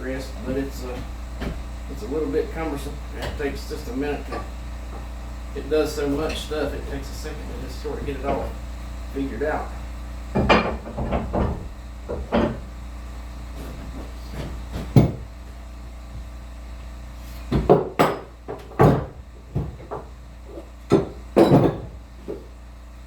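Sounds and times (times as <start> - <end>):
metal clunks and knocks: 8.0 - 8.6, 10.3 - 12.8, 13.6 - 15.3, 17.5 - 22.5.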